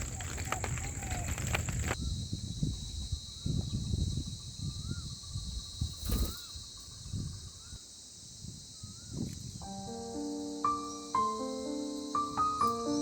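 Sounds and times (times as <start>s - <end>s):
wind rumbling on microphone: 0.0s - 10.0s
high insect drone: 0.0s - 13.0s.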